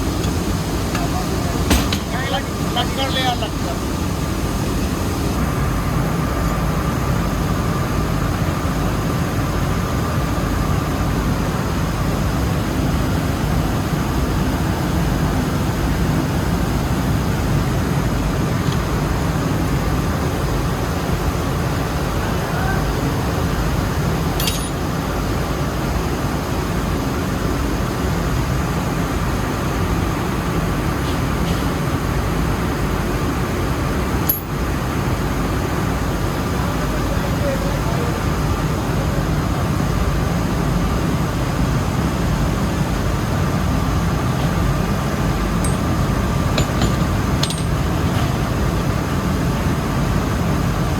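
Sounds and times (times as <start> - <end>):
mill machinery running: 0.0 - 22.4, 42.4 - 50.9
faint steady whine: 0.0 - 30.9.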